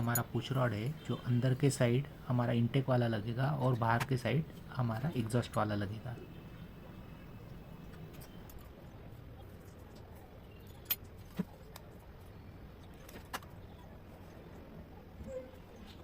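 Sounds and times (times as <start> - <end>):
tools clicking and tapping: 0.0 - 0.3
faint background hiss: 0.0 - 8.7.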